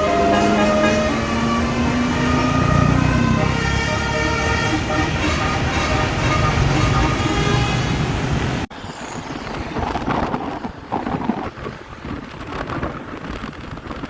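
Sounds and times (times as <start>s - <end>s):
bus horn chord: 0.0s - 8.0s
rumbling traffic: 0.0s - 14.0s
wind on microphone: 8.2s - 14.0s.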